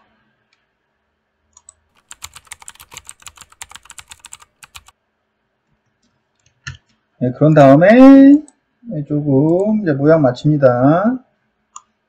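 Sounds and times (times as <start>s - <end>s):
computer keyboard typing: 1.6s - 5.0s.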